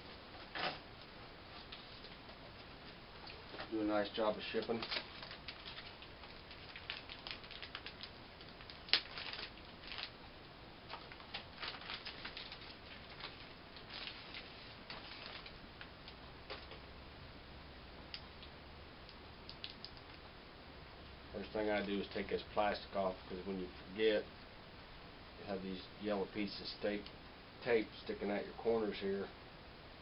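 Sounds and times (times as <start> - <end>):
plastic packaging crackling: 4.3 - 10.2, 10.9 - 16.8.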